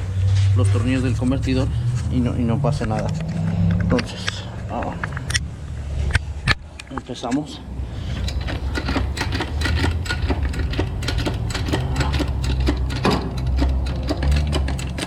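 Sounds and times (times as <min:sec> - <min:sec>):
steady low hum: 0:00.0 - 0:15.0
small machine clicking: 0:08.2 - 0:15.0.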